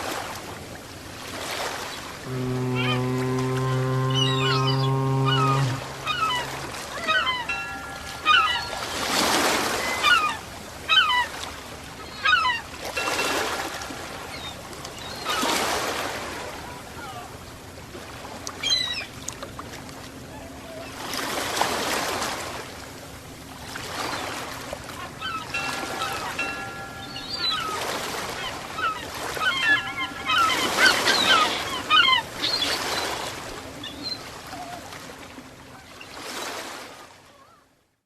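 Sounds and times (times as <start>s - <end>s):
ocean waves washing: 0.0s - 37.0s
birds calling: 1.9s - 16.1s, 23.9s - 34.3s
deep horn: 2.2s - 8.3s.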